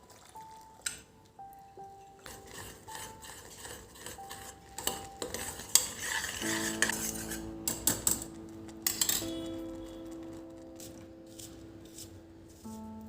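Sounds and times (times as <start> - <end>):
soft background music: 0.0 - 13.0
small objects clinking and knocking: 7.7 - 10.5.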